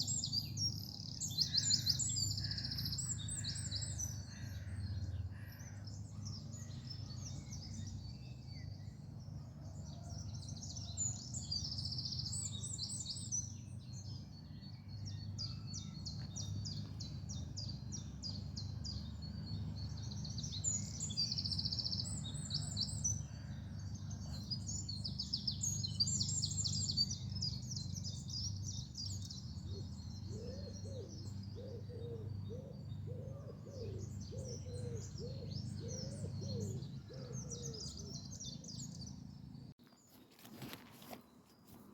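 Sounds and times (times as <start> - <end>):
songbirds trilling and chirping: 0.0 - 41.9
low cooing bird call: 28.5 - 39.0.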